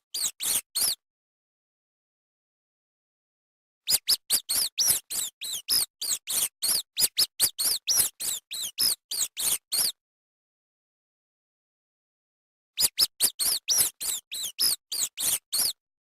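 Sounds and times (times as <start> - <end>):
rat squeaking: 0.1 - 1.0, 3.9 - 10.0, 12.8 - 15.8.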